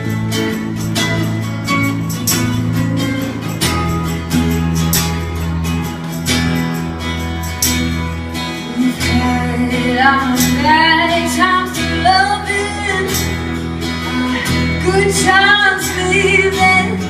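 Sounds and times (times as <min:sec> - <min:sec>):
bass notes: 0:00.0 - 0:17.0
strummed acoustic guitar: 0:00.0 - 0:17.0
woman singing wordless melody: 0:08.7 - 0:13.4, 0:14.0 - 0:17.0.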